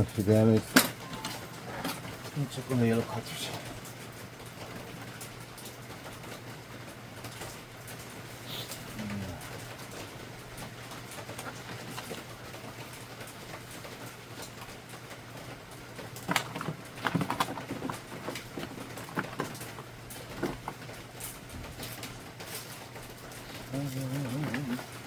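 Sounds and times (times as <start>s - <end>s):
steady low hum: 0.0s - 25.0s
plastic clicks and knocks: 16.2s - 21.0s.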